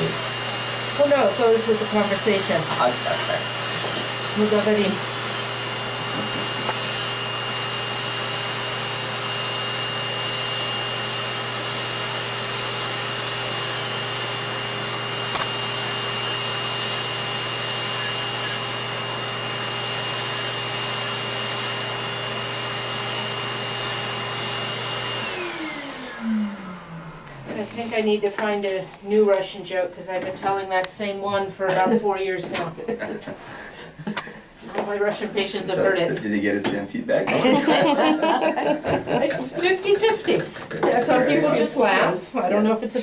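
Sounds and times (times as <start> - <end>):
nail drill whining: 0.0 - 28.0.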